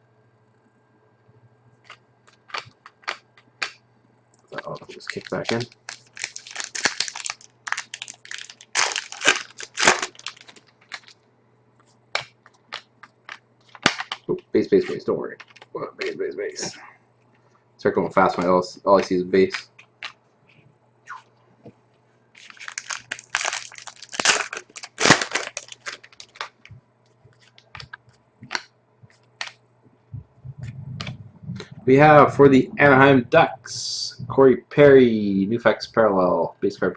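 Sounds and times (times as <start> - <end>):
wrappers crinkling: 4.5 - 11.2, 12.2 - 16.2, 22.4 - 29.6
cards being handled: 12.2 - 16.2, 18.4 - 20.2.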